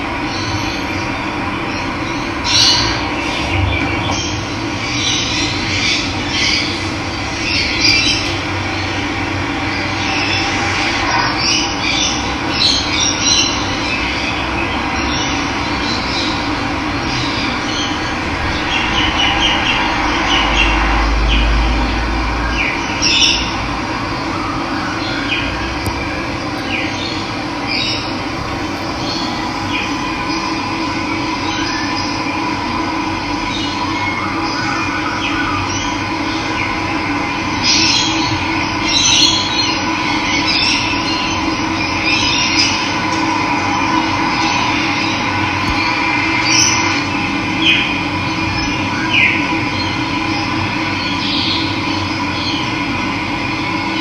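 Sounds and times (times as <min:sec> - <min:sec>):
low rumble: 0:13.8 - 0:33.8
birds chirping: 0:25.0 - 0:32.3.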